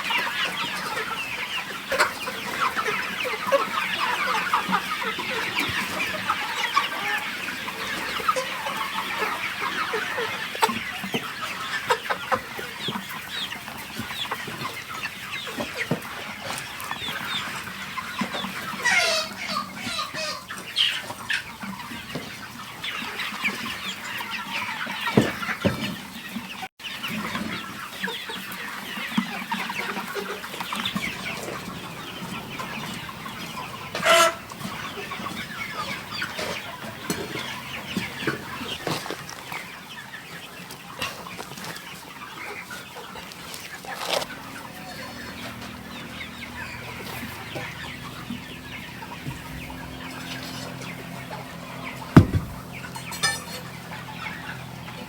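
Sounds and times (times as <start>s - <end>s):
chickens clucking and calling: 0.0s - 55.0s.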